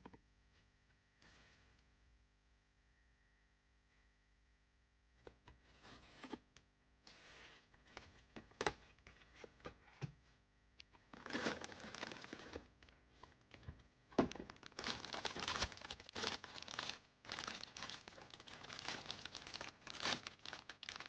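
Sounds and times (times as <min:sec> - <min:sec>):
plastic packaging crinkling: 0:11.2 - 0:12.6, 0:14.2 - 0:21.0.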